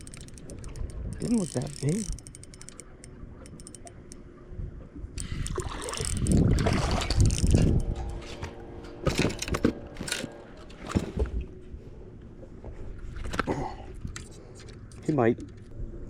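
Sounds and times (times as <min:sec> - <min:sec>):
water splashing and sloshing: 0:04.8 - 0:15.7.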